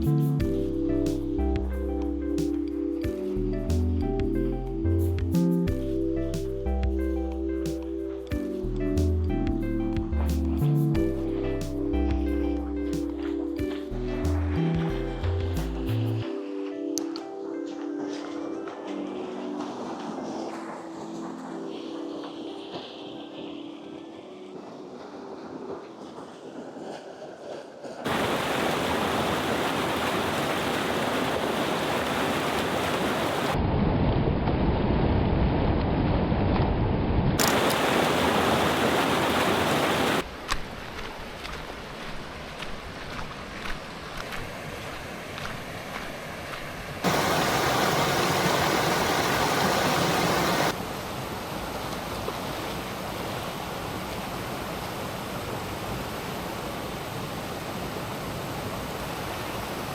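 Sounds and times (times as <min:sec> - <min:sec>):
creek water rushing over falls: 0:28.1 - 0:33.6, 0:37.4 - 0:59.9.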